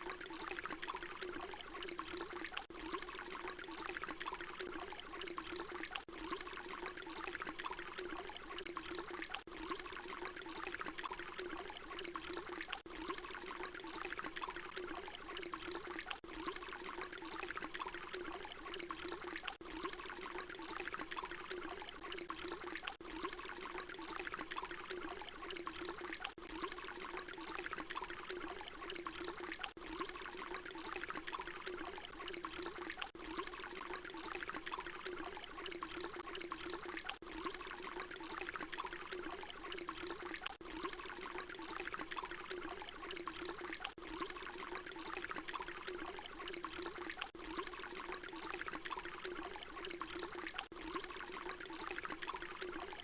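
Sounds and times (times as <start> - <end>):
water pouring: 0.0 - 53.0.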